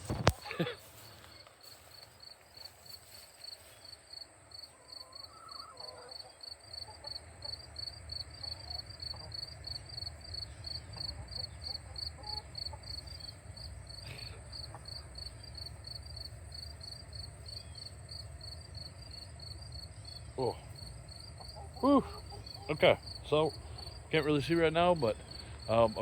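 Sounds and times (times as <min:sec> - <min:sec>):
insects chirping: 0:00.0 - 0:26.0
steady high buzz: 0:13.1 - 0:26.0.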